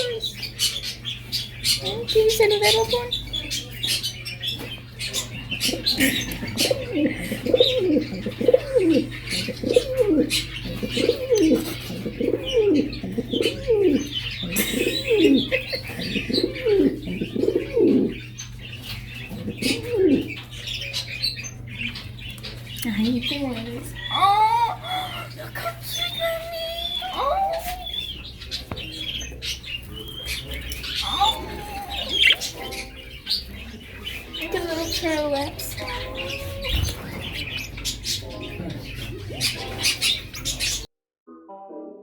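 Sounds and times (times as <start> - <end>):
small birds chirping: 0.0 - 40.9
steady low hum: 0.0 - 40.9
dove cooing: 5.3 - 18.4, 19.2 - 20.4, 30.9 - 33.6.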